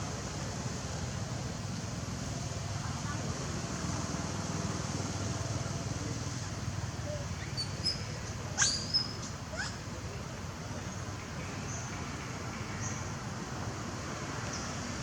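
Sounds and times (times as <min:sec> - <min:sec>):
young monkey squealing: 0:07.4 - 0:09.8.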